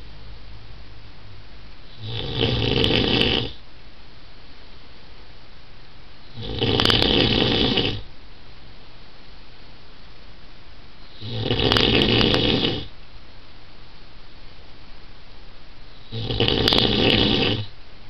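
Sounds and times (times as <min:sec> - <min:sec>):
man snoring loudly: 0:02.0 - 0:03.6, 0:06.3 - 0:08.0, 0:11.1 - 0:12.9, 0:16.0 - 0:17.7.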